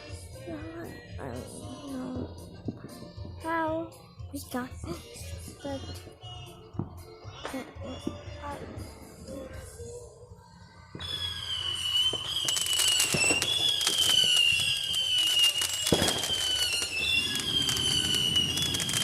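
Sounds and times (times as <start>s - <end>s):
firework whistling: 10.5s - 19.0s
firework crackling: 10.9s - 19.0s
loud pop: 12.1s - 14.7s, 15.8s - 19.0s.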